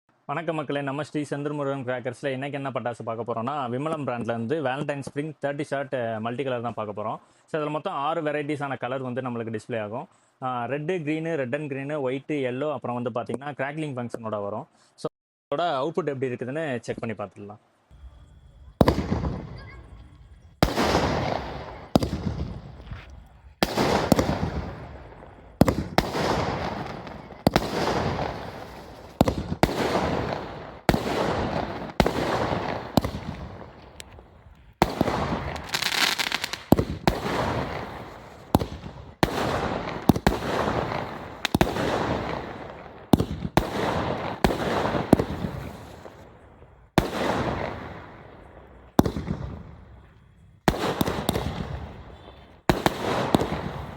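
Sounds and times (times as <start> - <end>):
firework bangs and crackle: 17.9 - 53.9.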